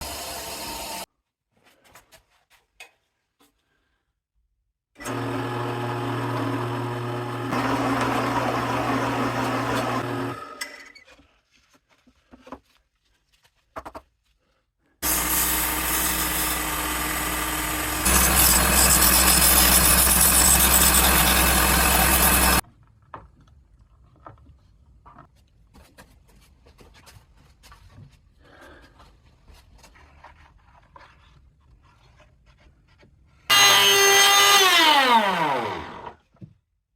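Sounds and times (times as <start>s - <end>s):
electric router motor hum: 0.0s - 1.0s, 5.0s - 10.5s, 15.0s - 22.6s, 33.5s - 36.2s.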